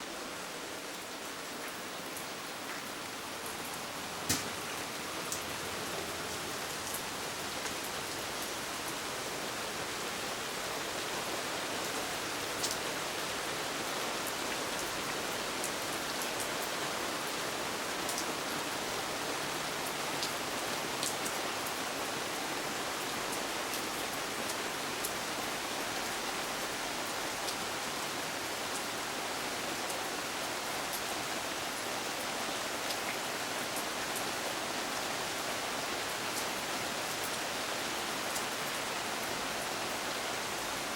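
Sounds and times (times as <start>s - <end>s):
steady rain: 0.0s - 40.9s
raindrops tapping close by: 4.2s - 5.5s.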